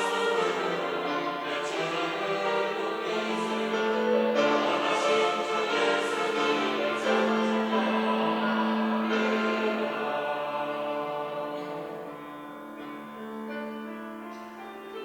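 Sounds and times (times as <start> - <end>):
church choir singing in harmony: 0.0 - 15.0.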